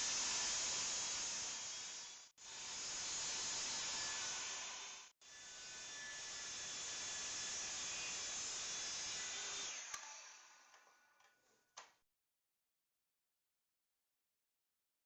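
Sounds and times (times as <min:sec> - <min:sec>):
table saw running: 0:00.0 - 0:10.7.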